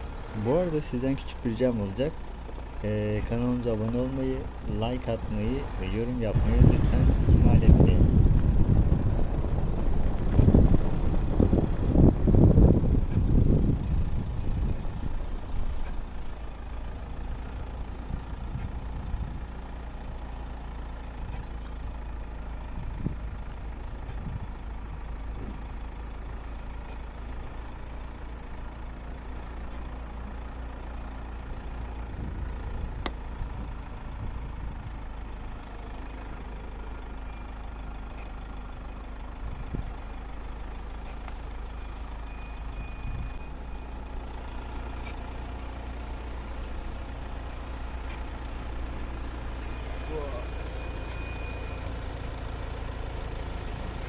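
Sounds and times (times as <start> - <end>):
faint engine hum: 0.0 - 54.0
vehicle road rumble: 0.0 - 54.0
short high squeaks: 10.2 - 11.0, 21.3 - 22.2, 31.4 - 32.1, 37.6 - 38.6, 41.7 - 43.9, 53.8 - 54.0.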